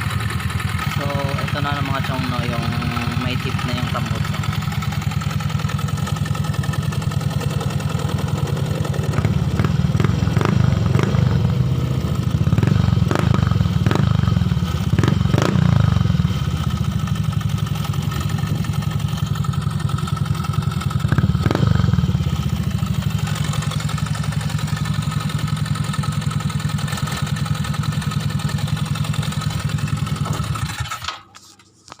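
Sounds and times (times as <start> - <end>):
scooter engine idling and revving: 0.0 - 31.5.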